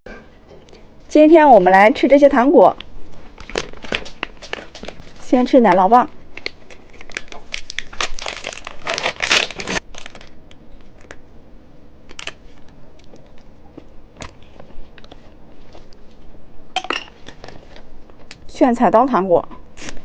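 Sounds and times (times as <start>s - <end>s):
plastic wrapper crinkling and tearing: 3.4s - 5.2s, 6.3s - 11.2s.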